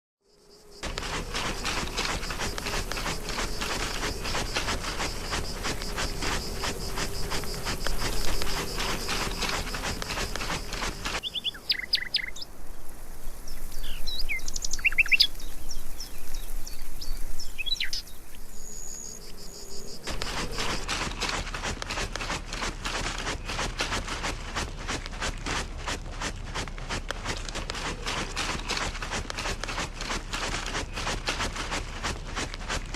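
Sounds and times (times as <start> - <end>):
rasping scratch strokes: 0.8 - 11.2, 20.1 - 32.9
whistled bird chirps: 11.2 - 12.5, 13.5 - 20.0.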